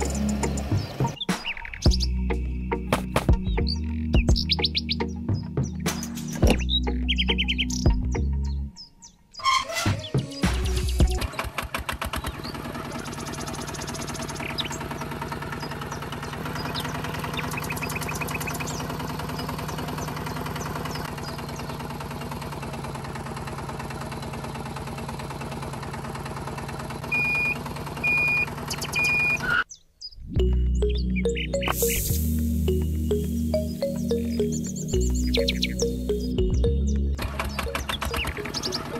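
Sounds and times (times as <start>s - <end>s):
small motor droning hum: 12.2s - 29.6s
rapid ticking: 37.2s - 38.9s.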